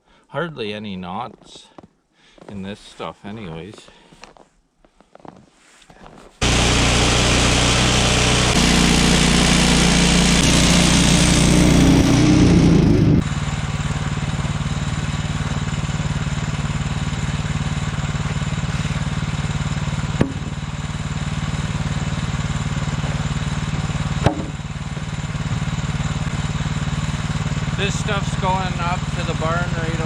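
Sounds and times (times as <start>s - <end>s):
small gasoline engine idling: 6.4s - 30.0s
sharp knocks: 20.2s - 20.6s, 24.2s - 25.1s.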